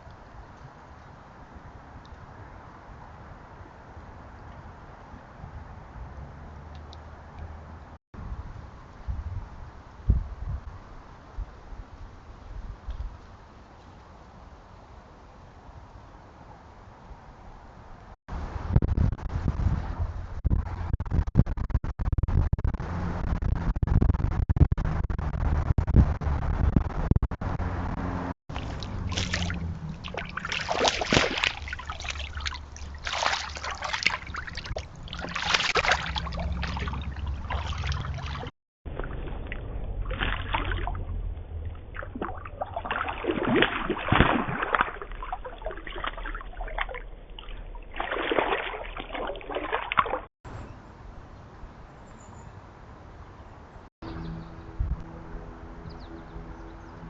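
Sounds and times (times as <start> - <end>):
low rumble: 18.3 - 33.0
lake water lapping: 28.5 - 41.0, 41.7 - 50.3.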